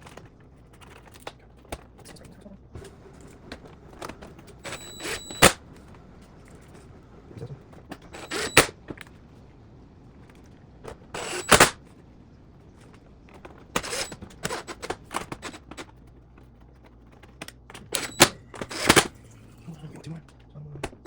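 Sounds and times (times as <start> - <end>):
metal clicks and rattles: 0.0 - 5.9.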